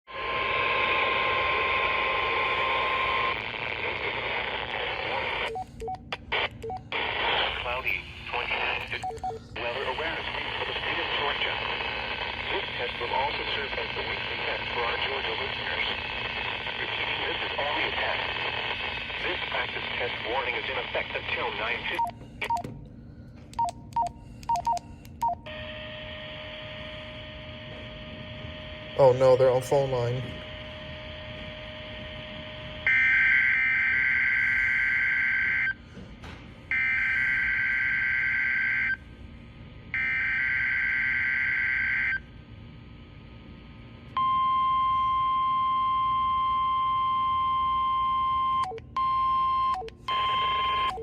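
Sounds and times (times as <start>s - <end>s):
radio static hiss: 0.1s - 22.2s, 25.6s - 32.8s
mains hum: 0.1s - 51.0s
touch-tone phone beeps: 9.0s - 9.4s, 22.0s - 22.7s, 23.6s - 25.4s.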